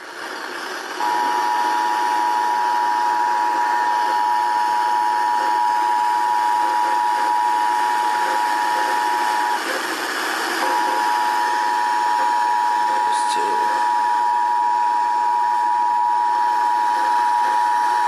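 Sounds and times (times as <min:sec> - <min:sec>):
radio hiss: 0:00.0 - 0:18.0
two-tone alert signal: 0:01.0 - 0:09.6.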